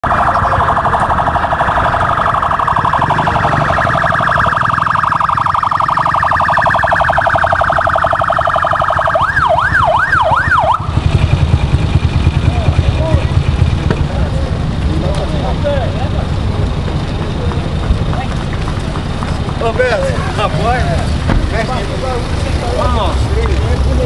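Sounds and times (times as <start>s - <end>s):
electronic siren warbling: 0.0s - 11.4s.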